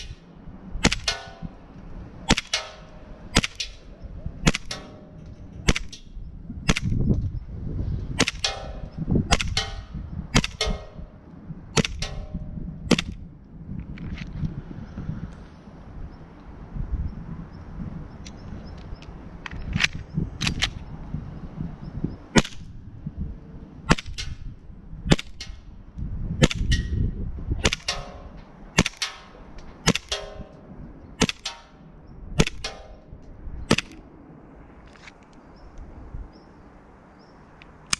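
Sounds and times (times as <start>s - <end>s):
low rumble: 0.0s - 34.9s
airsoft pistol shots: 0.8s - 1.4s, 2.3s - 3.8s, 4.4s - 6.1s, 6.7s - 7.0s, 8.2s - 11.1s, 11.8s - 13.2s, 22.4s - 22.7s, 23.9s - 24.5s, 25.1s - 25.6s, 26.4s - 26.9s, 27.6s - 30.6s, 31.2s - 31.8s, 32.4s - 33.0s, 33.7s - 34.0s.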